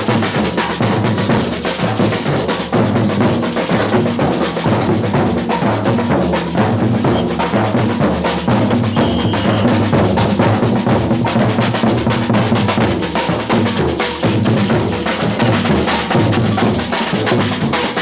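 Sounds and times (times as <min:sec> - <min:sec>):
deep bass drums beating: 0:00.0 - 0:18.0
fast snare drum strokes: 0:00.0 - 0:18.0.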